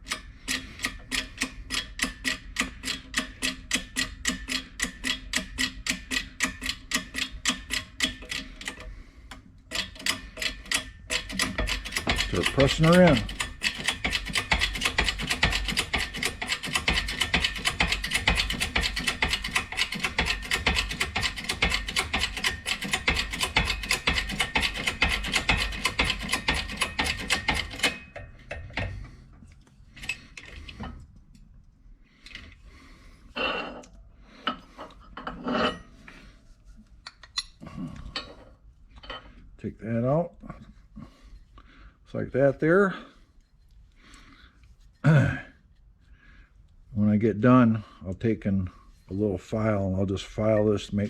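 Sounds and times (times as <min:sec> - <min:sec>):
metal clinks and knocks: 0:09.7 - 0:29.2, 0:37.0 - 0:39.4.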